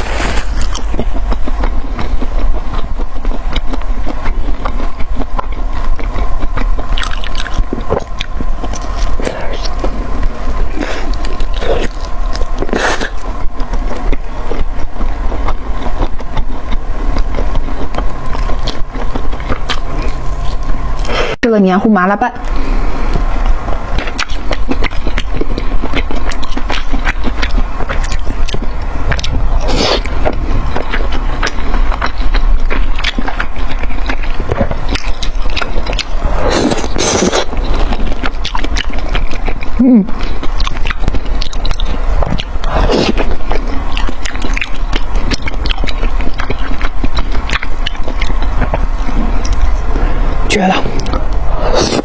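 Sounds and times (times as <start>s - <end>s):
person chewing: 0.0s - 21.4s, 22.4s - 52.0s
low rumble: 0.0s - 52.0s.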